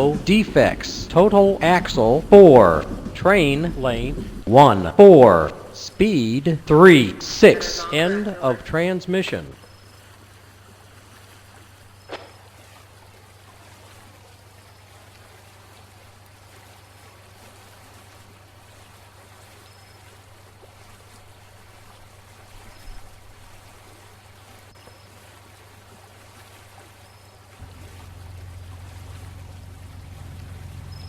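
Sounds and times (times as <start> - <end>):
low steady hum: 0.0 - 9.6, 27.6 - 31.0.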